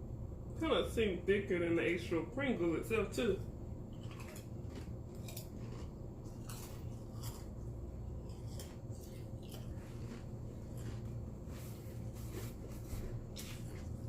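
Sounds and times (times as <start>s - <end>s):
steady low hum: 0.0s - 14.0s
chewing crunchy chips: 3.8s - 14.0s.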